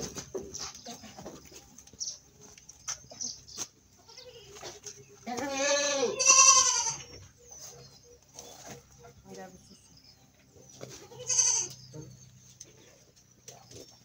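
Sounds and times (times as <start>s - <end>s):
goat bleating: 4.0s - 7.2s, 10.8s - 11.9s.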